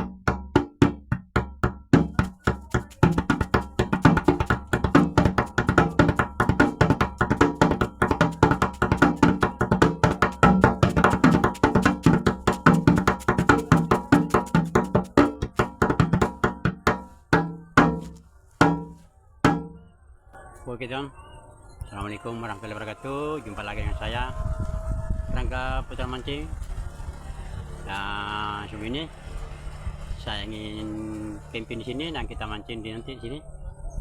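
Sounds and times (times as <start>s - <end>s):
wood block percussion: 0.0s - 19.9s.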